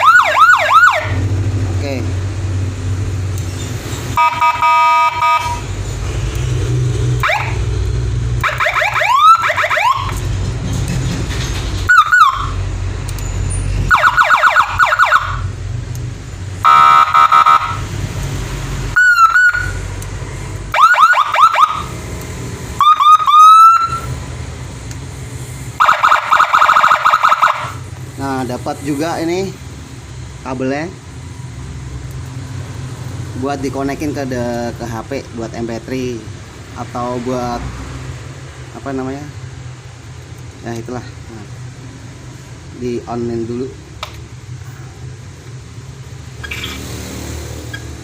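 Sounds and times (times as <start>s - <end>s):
electronic siren tones: 4.2s - 5.7s, 7.2s - 7.6s, 8.4s - 10.2s, 11.9s - 12.6s, 13.9s - 15.5s, 16.6s - 17.9s, 19.0s - 19.9s, 22.8s - 24.1s, 25.8s - 27.8s.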